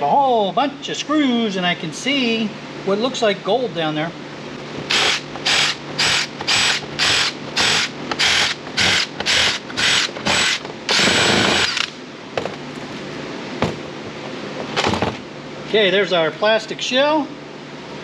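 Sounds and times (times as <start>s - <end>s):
power screwdriver bursts: 4.9s - 12.0s.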